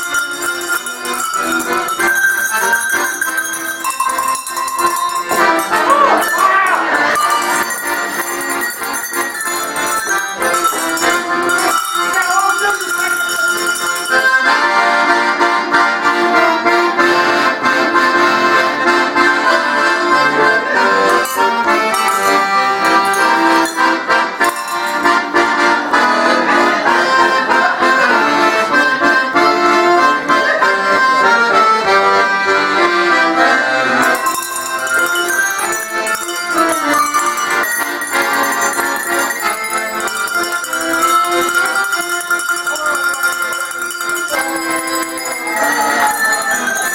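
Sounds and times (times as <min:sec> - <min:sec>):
cow bells ringing: 0:00.0 - 0:15.0, 0:20.8 - 0:25.6, 0:33.0 - 0:46.9
accordion playing: 0:00.0 - 0:46.9.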